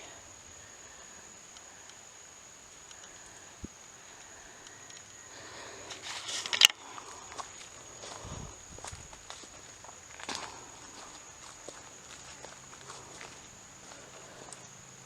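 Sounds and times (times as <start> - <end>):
footsteps scuffing on trail: 7.3 - 14.7.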